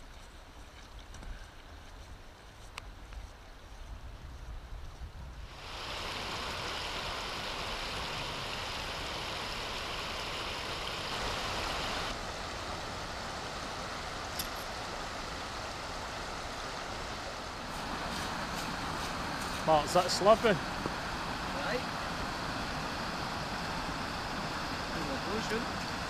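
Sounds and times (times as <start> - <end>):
rushing river water: 5.5 - 26.0.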